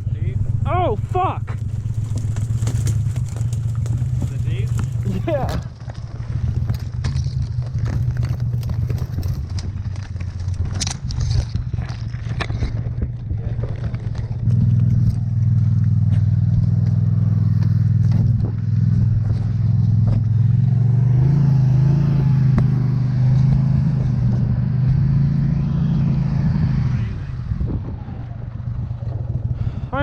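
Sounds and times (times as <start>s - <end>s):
engine running with low drone: 0.0s - 30.0s.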